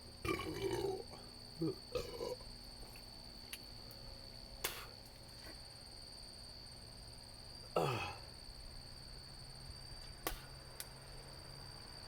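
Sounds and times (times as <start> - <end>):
man suppressing a burp: 0.2 - 2.5, 7.8 - 8.2.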